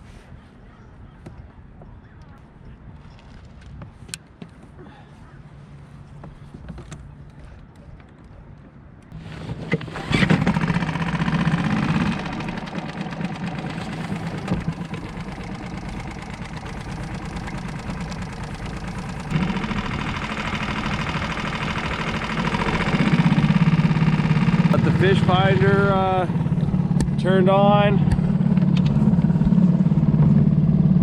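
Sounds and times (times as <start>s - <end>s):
outboard motor starting and running: 9.1s - 31.0s.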